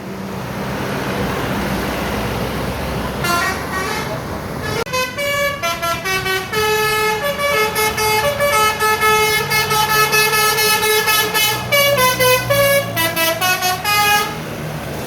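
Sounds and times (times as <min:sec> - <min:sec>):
bus engine rumbling: 0:00.0 - 0:15.0
bus air horn tune: 0:03.2 - 0:14.5.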